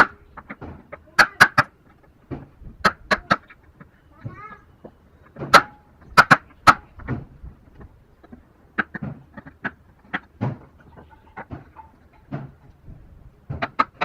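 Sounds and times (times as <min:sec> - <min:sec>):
wood being struck: 0:04.2 - 0:07.9, 0:08.8 - 0:14.0.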